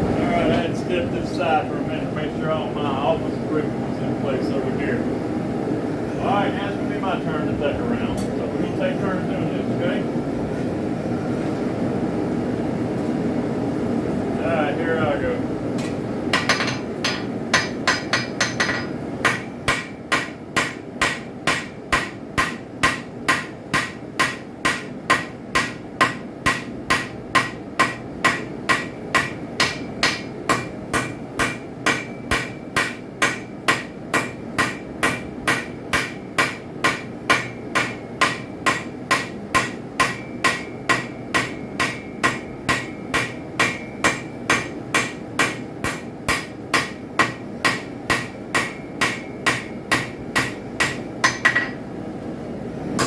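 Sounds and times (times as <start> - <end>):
hammer striking metal on anvil: 15.8 - 51.8.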